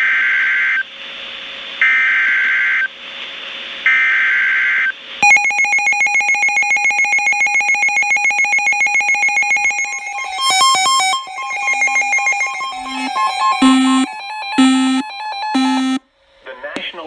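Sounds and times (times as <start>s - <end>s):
pulsing electronic alarm tone: 7.8s - 16.0s.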